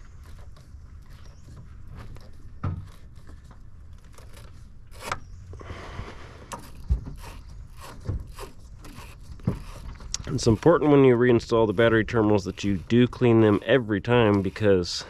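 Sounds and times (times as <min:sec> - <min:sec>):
tools scraping metal: 0:06.5 - 0:15.0.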